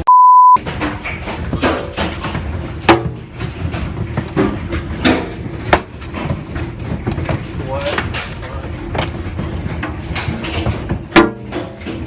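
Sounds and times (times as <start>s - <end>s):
censor bleep: 0.0s - 0.6s.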